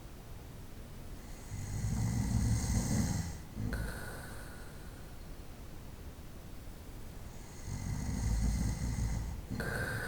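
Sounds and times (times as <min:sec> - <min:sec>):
quiet sleeping breathing: 0:01.1 - 0:05.3, 0:07.2 - 0:10.0.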